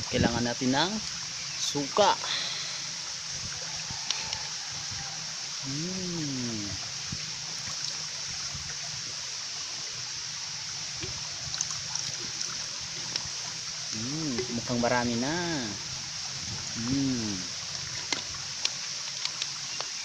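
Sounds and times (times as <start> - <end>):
person humming: 5.6 - 6.8, 14.0 - 14.6, 16.8 - 17.5.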